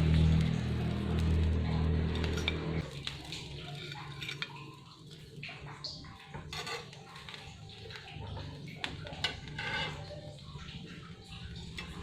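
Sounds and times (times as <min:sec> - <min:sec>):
dishes and cutlery clinking: 0:03.6 - 0:05.1, 0:05.8 - 0:11.0.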